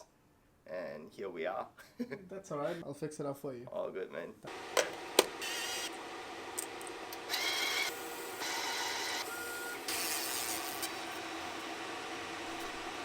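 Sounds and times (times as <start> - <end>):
small machine running: 5.4 - 13.0.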